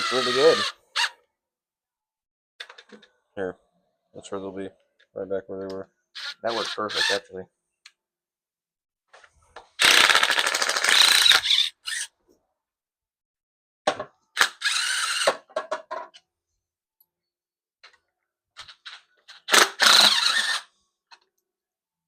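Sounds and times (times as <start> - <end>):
cordless power driver spinning bolts: 19.5 - 20.6.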